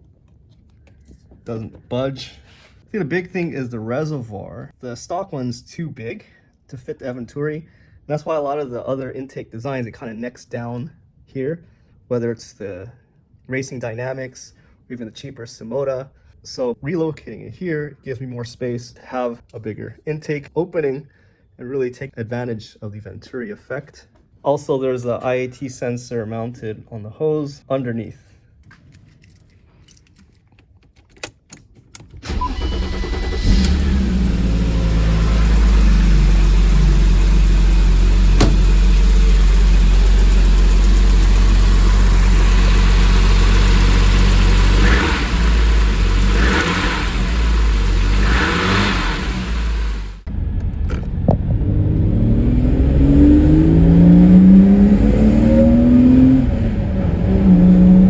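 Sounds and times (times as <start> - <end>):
car engine intake noise: 32.2 - 50.2
engine revving: 32.3 - 58.0.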